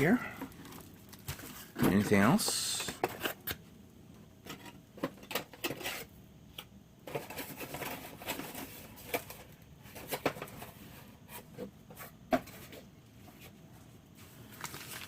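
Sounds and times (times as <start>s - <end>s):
plastic bag rustling: 14.2s - 15.0s.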